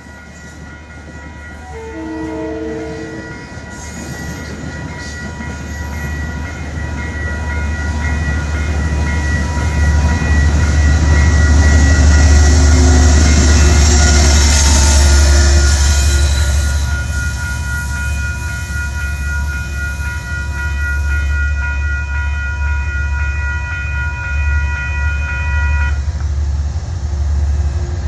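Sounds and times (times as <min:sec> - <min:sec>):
low rumble of arriving train: 0:00.0 - 0:28.0
train air horn chord: 0:01.6 - 0:03.4, 0:20.8 - 0:26.1.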